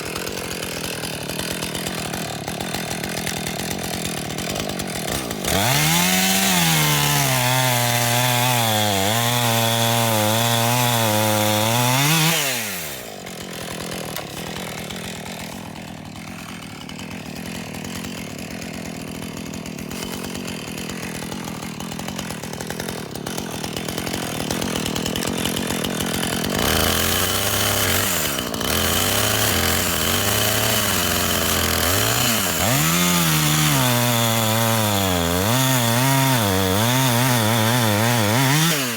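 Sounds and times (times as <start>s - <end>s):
chainsaw idling: 0.0s - 38.9s
chainsaw revving and cutting wood: 0.0s - 38.9s.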